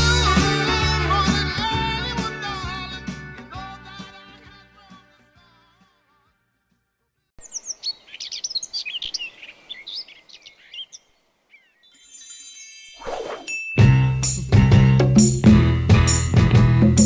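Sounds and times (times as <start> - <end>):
soul song: 0.0 - 6.4
songbirds chirping: 7.4 - 12.0
bell-like ringing tones: 11.9 - 14.4.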